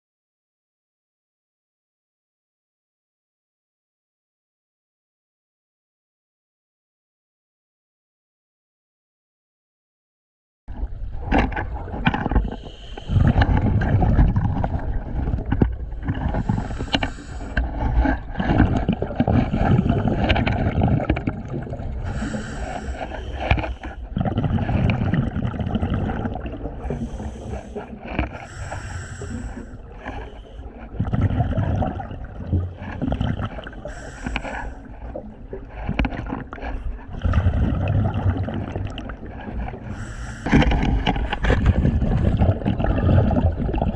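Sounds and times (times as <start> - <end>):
gurgling exhaled bubbles: 10.7 - 43.9
regulator inhalation hiss: 16.4 - 17.6, 22.1 - 24.0, 26.9 - 30.6, 33.8 - 34.8, 40.0 - 40.5.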